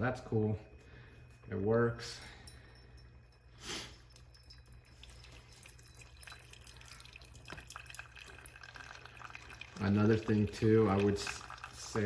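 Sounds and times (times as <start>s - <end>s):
coffee dripping into cup: 2.5s - 12.0s.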